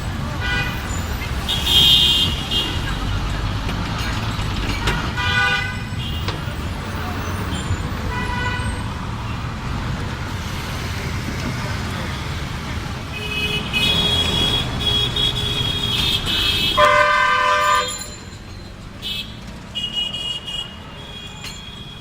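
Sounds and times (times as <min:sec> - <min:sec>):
road traffic rumbling: 0:00.0 - 0:22.0
vehicle horns: 0:00.3 - 0:03.2, 0:04.8 - 0:06.5, 0:07.2 - 0:09.4, 0:13.1 - 0:18.2, 0:19.0 - 0:22.0.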